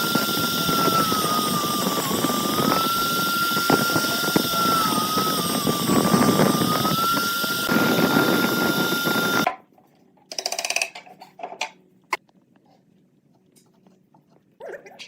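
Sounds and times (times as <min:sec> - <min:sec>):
power tool whining: 0:00.0 - 0:09.5.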